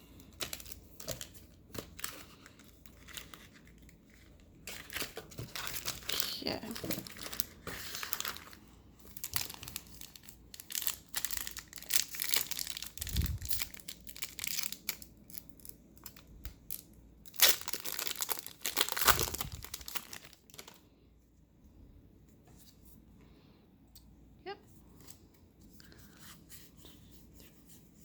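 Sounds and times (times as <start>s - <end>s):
card pack wrappers crinkling: 0.1s - 20.8s.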